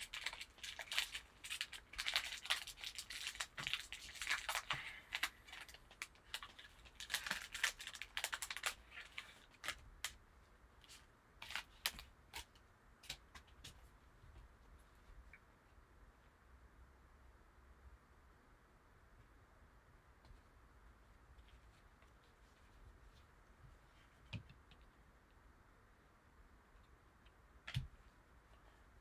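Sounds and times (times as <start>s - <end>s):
card pack wrapper tearing: 0.0s - 9.8s.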